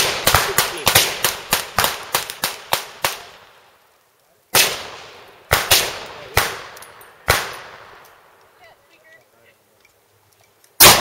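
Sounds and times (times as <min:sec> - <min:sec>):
pistol gunshots with echo: 0:00.0 - 0:03.3, 0:04.6 - 0:07.9, 0:10.8 - 0:11.0.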